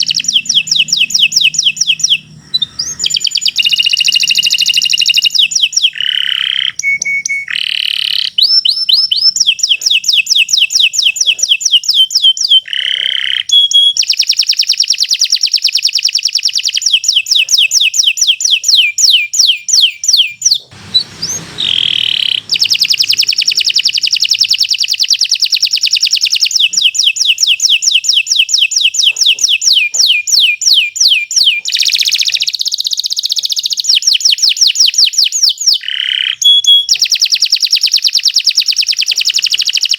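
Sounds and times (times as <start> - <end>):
canary singing trills: 0.0 - 39.9
short noisy break: 20.4 - 24.7.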